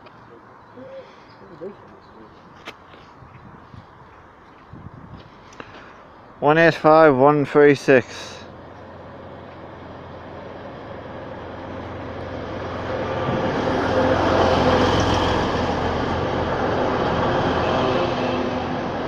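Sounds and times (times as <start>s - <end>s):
train engine: 8.1s - 19.0s.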